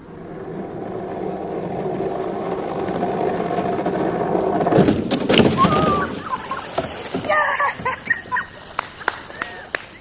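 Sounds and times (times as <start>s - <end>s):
cart wheels rolling on pavement: 0.0s - 10.0s.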